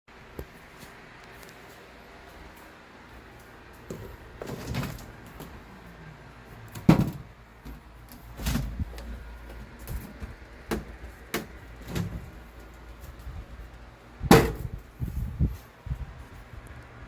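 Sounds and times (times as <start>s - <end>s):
clunks and knocks: 6.7s - 12.4s.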